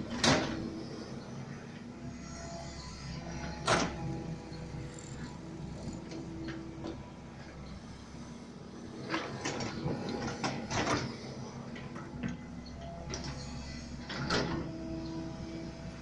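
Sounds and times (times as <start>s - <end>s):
excavator motor hum: 0.0s - 16.0s.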